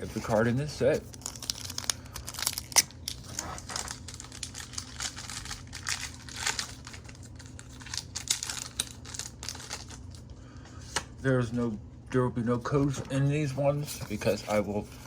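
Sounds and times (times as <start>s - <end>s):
foil wrapper crinkling: 0.0s - 10.3s.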